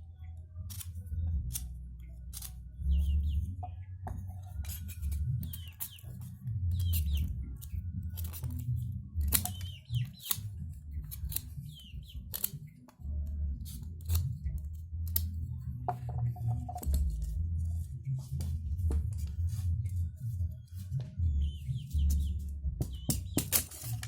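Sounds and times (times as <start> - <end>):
low steady rumble: 0.0 - 23.2
clicks and scrapes on bamboo: 0.6 - 24.0
bird chirps: 2.8 - 7.3.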